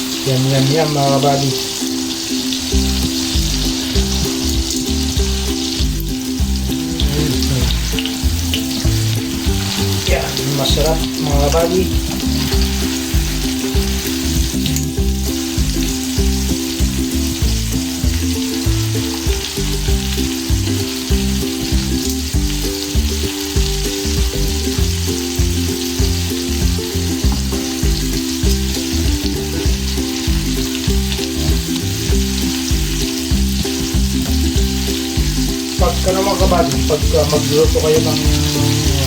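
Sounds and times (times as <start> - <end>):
background music with bass: 0.0 - 39.0
steak sizzling in a pan: 0.0 - 39.0.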